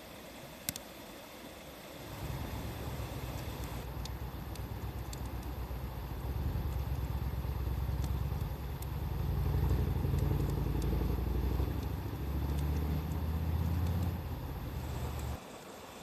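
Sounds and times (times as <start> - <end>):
wood fire crackling: 1.8 - 15.4
passing vehicle engine rumble: 4.8 - 15.4.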